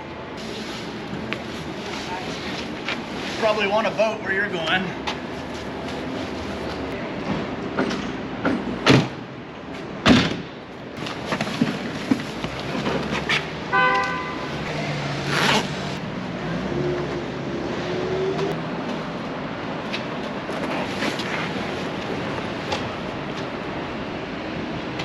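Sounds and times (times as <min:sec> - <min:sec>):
steady traffic: 0:00.0 - 0:25.0
car horn toot: 0:13.7 - 0:14.8.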